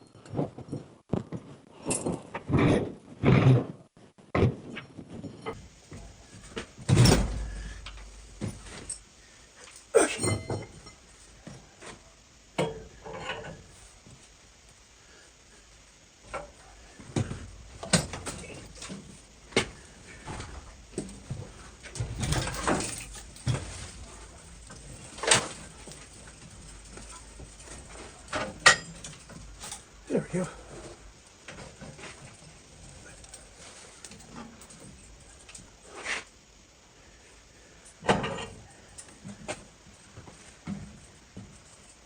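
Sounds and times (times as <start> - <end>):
metallic knocks and clunks: 6.8 - 9.0.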